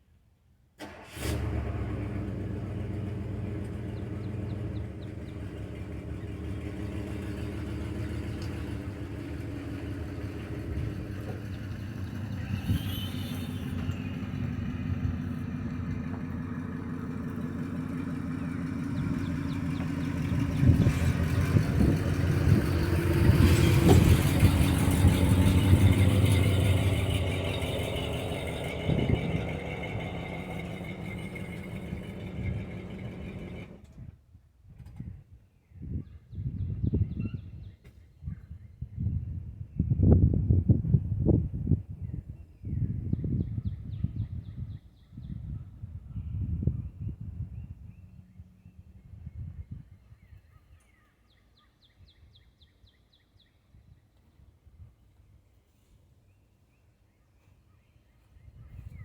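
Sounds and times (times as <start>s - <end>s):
engine humming: 0.8s - 34.1s.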